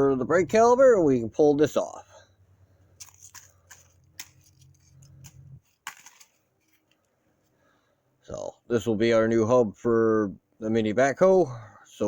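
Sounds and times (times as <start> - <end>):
scattered clicks and taps: 3.0 - 7.1.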